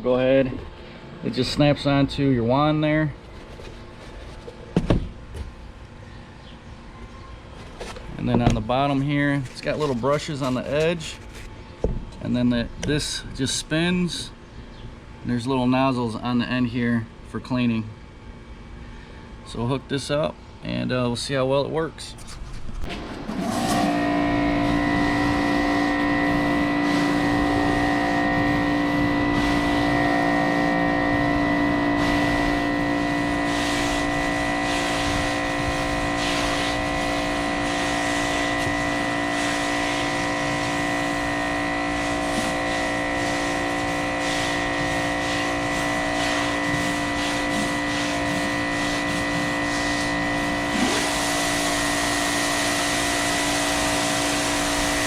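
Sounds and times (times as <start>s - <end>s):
pressure washer motor whining: 22.9s - 55.0s.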